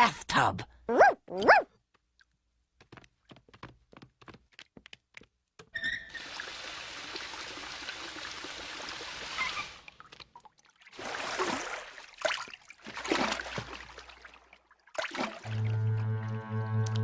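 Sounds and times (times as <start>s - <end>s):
water pouring into tub: 6.1s - 16.0s
water splashes: 6.2s - 16.0s.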